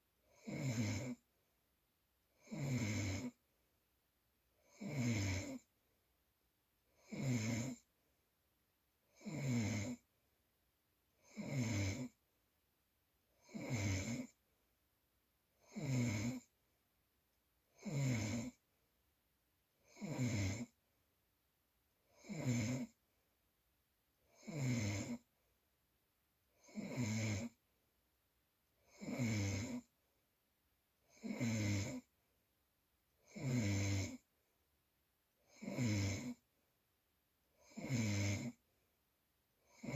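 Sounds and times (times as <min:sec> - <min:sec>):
rasping snore: 0:00.3 - 0:01.2, 0:02.4 - 0:03.4, 0:04.6 - 0:05.7, 0:07.0 - 0:07.9, 0:09.1 - 0:10.0, 0:11.2 - 0:12.2, 0:13.4 - 0:14.4, 0:15.6 - 0:16.5, 0:17.8 - 0:18.6, 0:19.8 - 0:20.8, 0:22.1 - 0:23.0, 0:24.3 - 0:25.3, 0:26.6 - 0:27.6, 0:28.9 - 0:29.9, 0:31.1 - 0:32.1, 0:33.2 - 0:34.2, 0:35.5 - 0:36.4, 0:37.6 - 0:38.6, 0:39.7 - 0:39.9.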